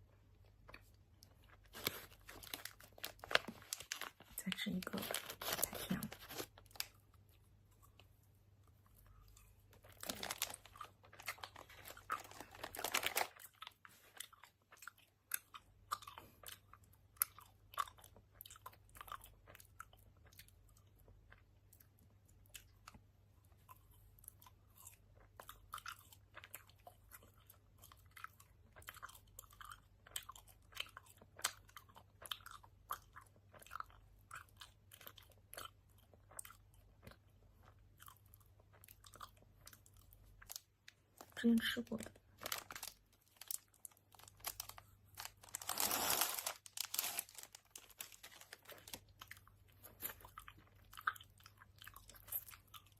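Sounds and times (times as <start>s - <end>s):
wet chewing and lip smacking: 13.3s - 41.3s, 47.5s - 52.9s.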